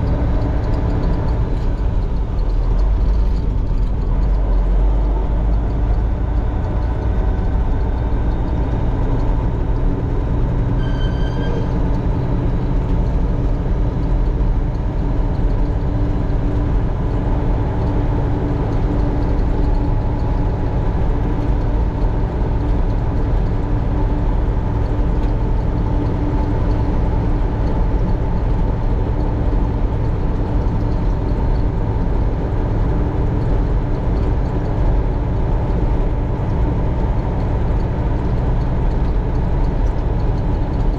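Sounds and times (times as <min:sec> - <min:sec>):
heavy diesel engine running: 0:00.0 - 0:40.9
high beep: 0:10.8 - 0:11.8.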